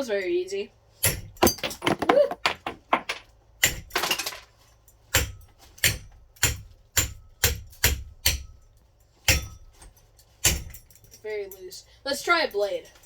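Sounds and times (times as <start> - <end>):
loose parts rattling: 1.3 - 4.9.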